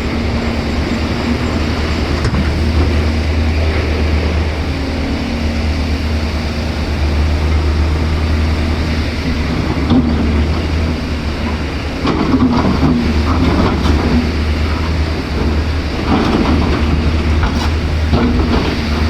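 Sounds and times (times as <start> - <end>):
heavy diesel machinery drone: 0.0 - 19.0.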